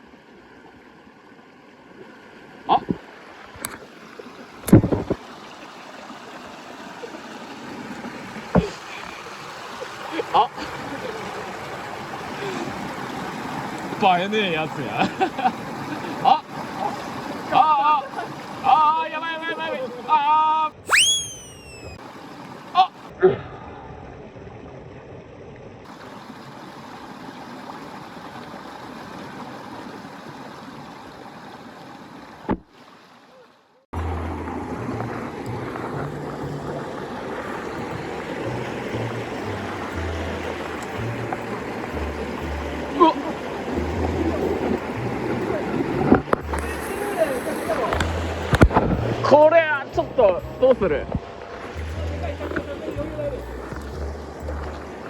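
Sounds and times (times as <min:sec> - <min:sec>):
stream water rushing: 0:00.0 - 0:23.2, 0:23.8 - 0:55.0
low thump: 0:04.7 - 0:05.2
low rumble: 0:34.0 - 0:37.3.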